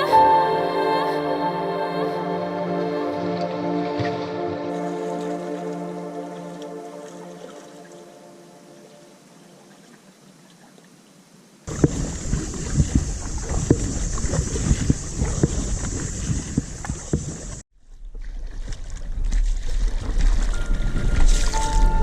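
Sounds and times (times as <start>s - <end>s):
water splashing from paddling: 2.8s - 11.0s, 11.7s - 22.0s
wind rumbling on microphone: 11.7s - 22.0s.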